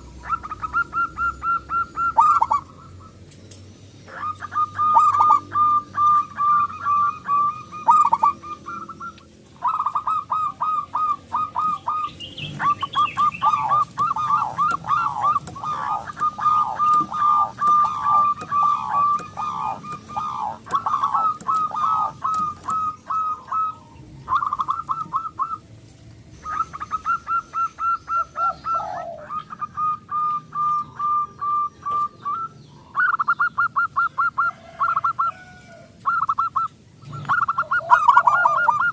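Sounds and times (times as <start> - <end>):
doves cooing: 0.0 - 3.4, 4.0 - 38.9.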